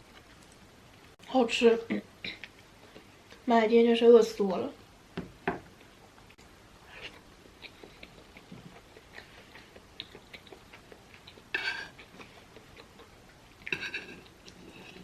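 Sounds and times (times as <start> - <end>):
chewing with wet mouth clicks: 7.0 - 15.0.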